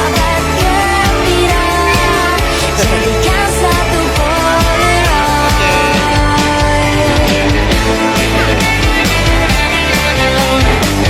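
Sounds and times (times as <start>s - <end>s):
pop-rock background music: 0.0s - 11.0s.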